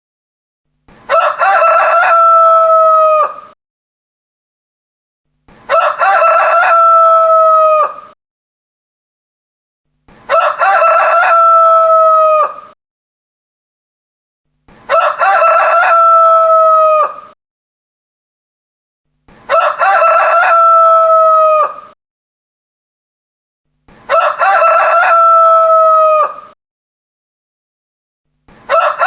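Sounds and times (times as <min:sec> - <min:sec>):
rooster crowing: 0:01.1 - 0:03.6, 0:05.7 - 0:08.2, 0:10.3 - 0:12.8, 0:14.9 - 0:17.4, 0:19.5 - 0:22.0, 0:24.1 - 0:26.6, 0:28.7 - 0:29.0.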